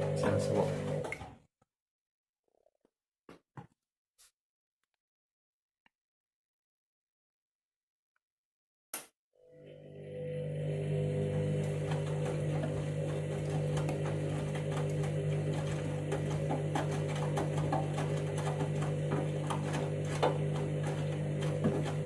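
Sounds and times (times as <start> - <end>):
washing machine motor hum: 0.0 - 1.3, 9.4 - 22.0
washing machine clicks and rattles: 11.6 - 22.0.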